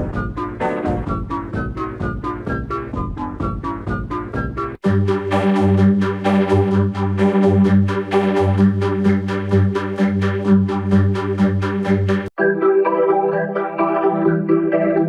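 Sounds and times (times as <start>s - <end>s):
pulsing synthesized alarm chord: 4.8s - 15.0s.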